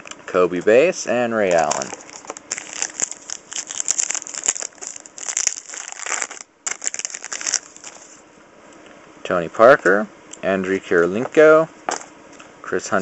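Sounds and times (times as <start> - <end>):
foil wrapper crinkling: 1.5 - 8.2.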